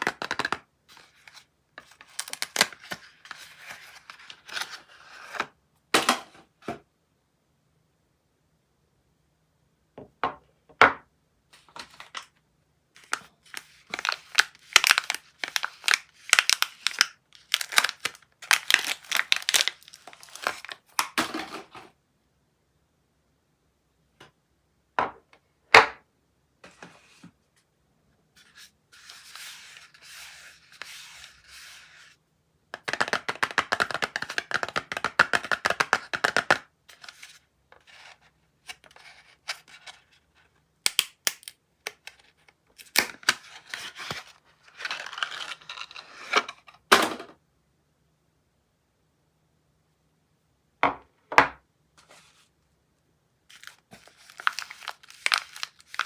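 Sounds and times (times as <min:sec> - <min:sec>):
wrapper crinkling and tearing: 0:01.2 - 0:05.3, 0:13.0 - 0:21.2, 0:40.9 - 0:46.4, 0:53.5 - 0:56.0.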